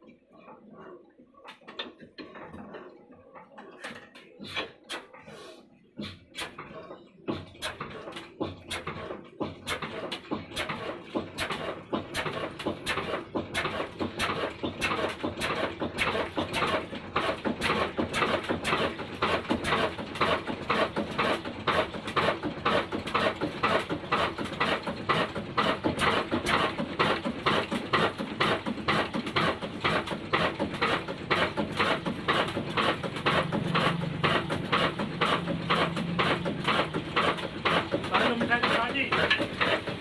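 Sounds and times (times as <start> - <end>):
diesel engine chugging slowly: 4.0 - 40.0.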